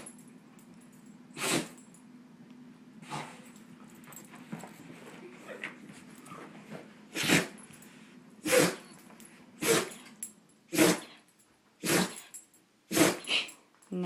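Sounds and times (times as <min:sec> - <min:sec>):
dog sneezing: 0:01.4 - 0:01.8, 0:07.1 - 0:07.6, 0:08.4 - 0:08.9, 0:09.6 - 0:10.0, 0:10.7 - 0:11.2, 0:11.8 - 0:12.2, 0:12.9 - 0:13.5.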